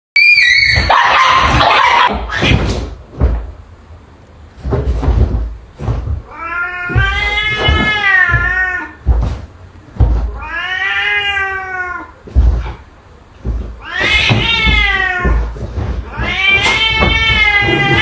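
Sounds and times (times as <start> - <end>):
low thumps: 0.7 - 10.6, 12.2 - 18.0
cat meowing: 6.3 - 9.1, 10.3 - 12.2, 13.7 - 18.0.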